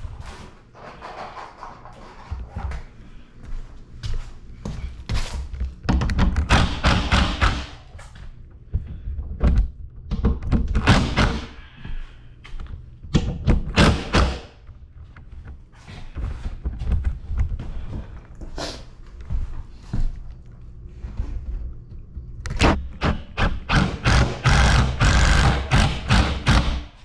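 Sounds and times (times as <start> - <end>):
impact driver hammering screws: 6.5 - 7.8, 23.0 - 26.9.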